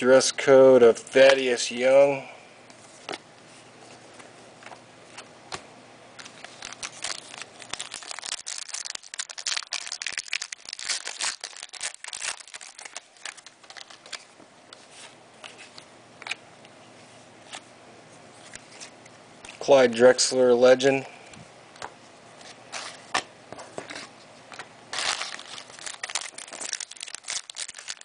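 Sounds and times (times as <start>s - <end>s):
plastic wrapper tearing and crinkling: 6.2s - 14.3s, 24.9s - 28.0s.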